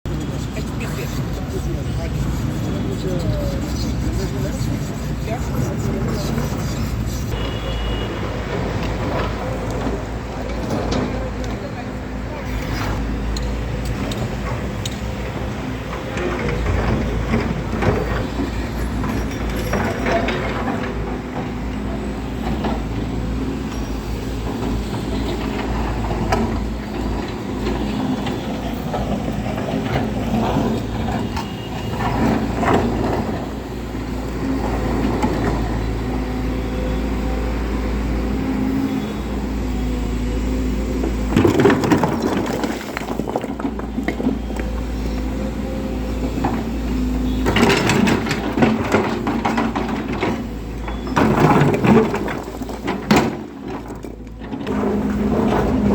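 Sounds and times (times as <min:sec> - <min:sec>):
excavator engine running: 0:00.0 - 0:55.9
knocks and clatter: 0:41.0 - 0:44.8, 0:46.2 - 0:55.9.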